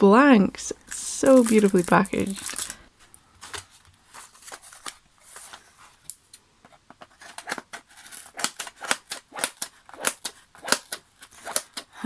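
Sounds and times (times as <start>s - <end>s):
packaging crinkling: 0.7s - 6.1s
scissors snipping packaging: 0.9s - 2.8s, 7.2s - 11.9s.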